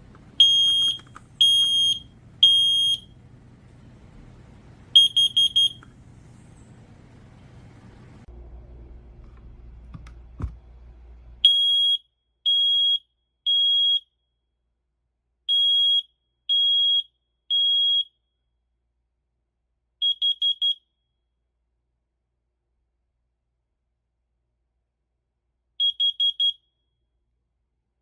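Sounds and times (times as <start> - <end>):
handling noise: 0.0 - 8.3, 8.9 - 10.9
smoke alarm beeping: 0.0 - 8.3, 11.4 - 14.0.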